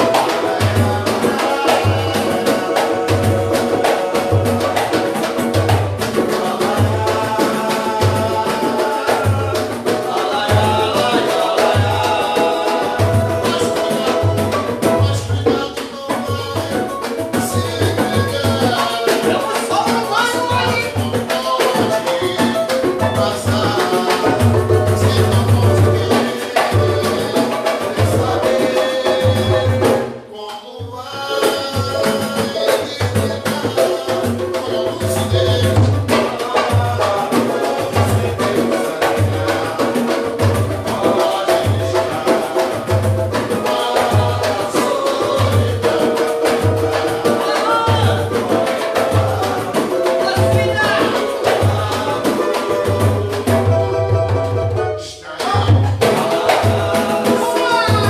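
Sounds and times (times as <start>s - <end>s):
samba band music: 0.0s - 58.0s.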